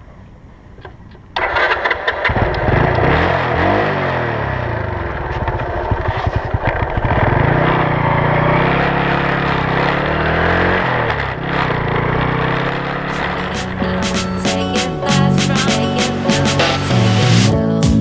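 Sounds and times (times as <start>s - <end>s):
motorcycle engine pulling away: 1.4s - 14.1s.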